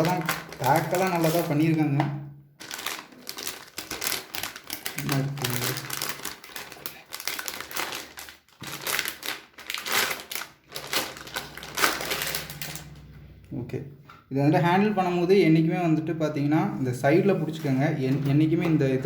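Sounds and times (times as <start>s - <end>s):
plastic crinkling: 0.0s - 2.0s, 2.6s - 13.1s.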